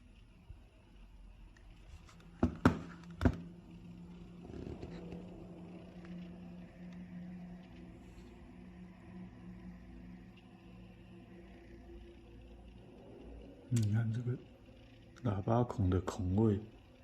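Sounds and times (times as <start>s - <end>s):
steady low hum: 0.0s - 17.0s
phone case rubbing and rattling: 4.4s - 5.3s.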